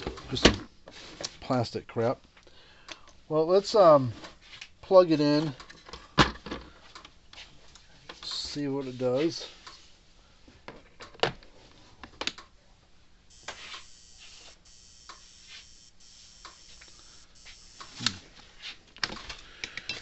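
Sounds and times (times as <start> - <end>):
electric fence energizer buzzing: 13.3 - 18.3.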